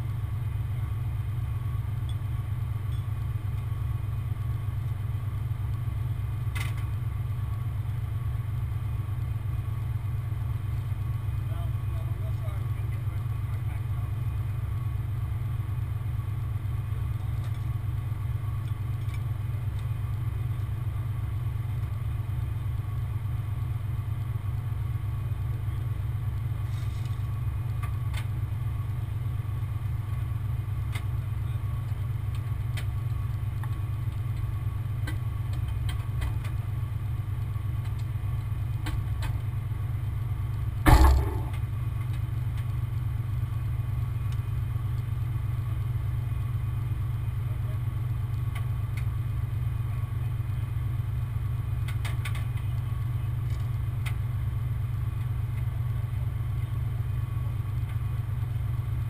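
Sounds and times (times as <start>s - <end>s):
loud metal clank: 40.9s - 41.6s.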